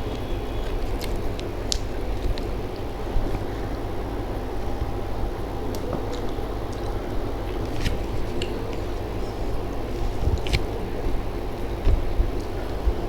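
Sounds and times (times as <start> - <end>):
person chewing soft food: 0.0 - 13.0
steady low hum: 0.0 - 13.0.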